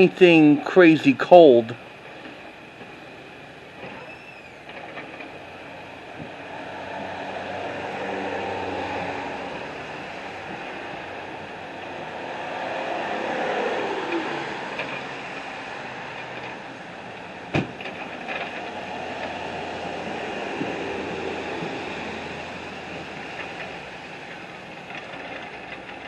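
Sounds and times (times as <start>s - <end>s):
street traffic: 0.0s - 26.0s
vehicle passing: 5.9s - 25.7s.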